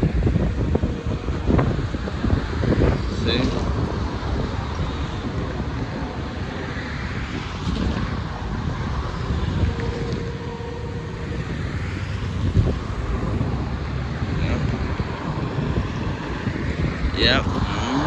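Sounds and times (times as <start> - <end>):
steady low rumble: 0.0 - 18.0
wind buffeting microphone: 0.0 - 18.0
faint held tone: 9.1 - 13.2.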